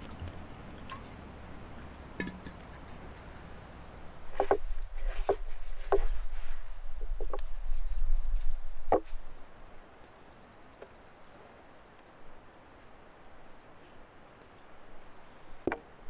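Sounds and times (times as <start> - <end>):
faint outdoor background noise: 0.0 - 16.0.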